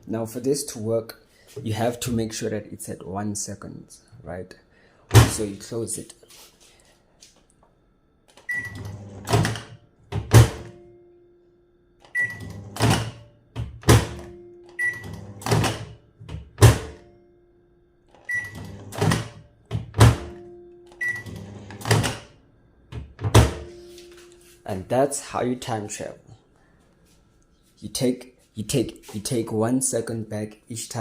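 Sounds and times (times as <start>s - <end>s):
microwave oven humming: 7.9s - 24.5s
microwave door clunks: 9.3s - 10.8s, 12.8s - 14.3s, 15.5s - 17.1s, 19.0s - 20.4s, 22.9s - 23.8s.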